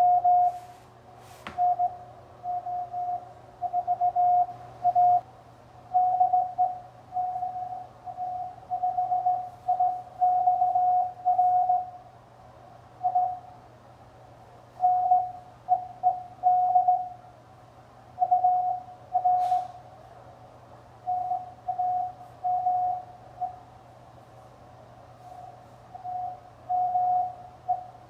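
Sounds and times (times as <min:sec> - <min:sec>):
morse code tone: 0:00.0 - 0:00.7, 0:01.6 - 0:05.2, 0:06.0 - 0:12.0, 0:14.8 - 0:17.2, 0:18.2 - 0:19.8, 0:21.1 - 0:23.6, 0:25.3 - 0:28.0
faint hum: 0:00.0 - 0:28.0.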